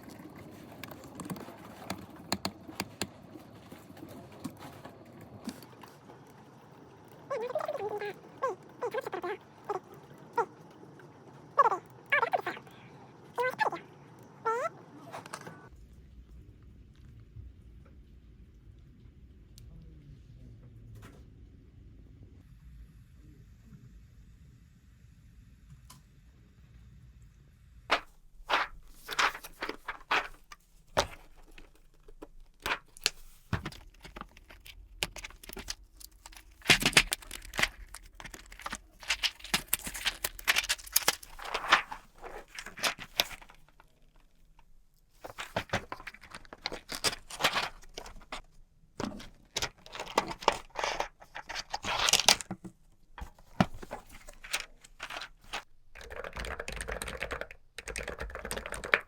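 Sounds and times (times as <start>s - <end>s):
rustling: 27.9s - 55.7s
keycaps clicking and clattering: 33.6s - 43.7s, 53.8s - 59.0s.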